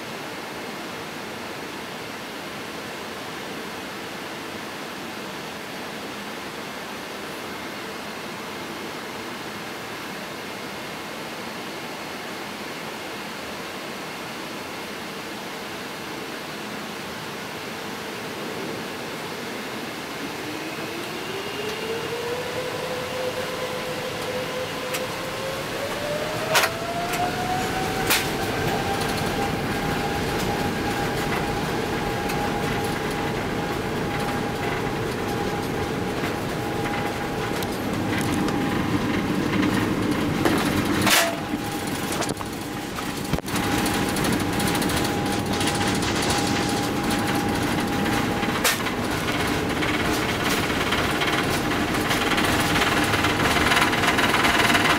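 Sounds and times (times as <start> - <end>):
jet engines spooling up: 19.4 - 54.9.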